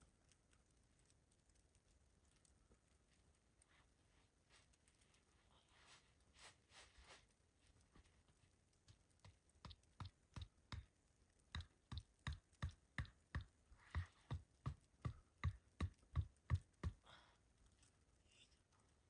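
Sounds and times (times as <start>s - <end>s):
sharp knocks or taps: 8.9s - 10.9s, 11.5s - 17.0s.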